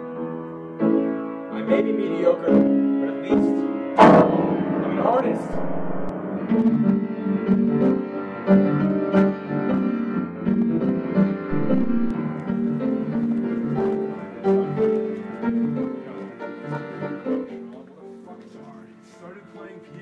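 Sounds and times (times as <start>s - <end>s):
piano melody over chords: 3.7s - 10.4s, 11.5s - 14.4s.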